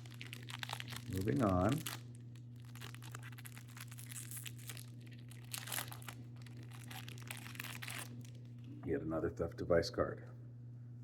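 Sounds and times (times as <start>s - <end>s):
wrapper crinkling and tearing: 0.0s - 8.6s
low electrical hum: 0.0s - 11.0s.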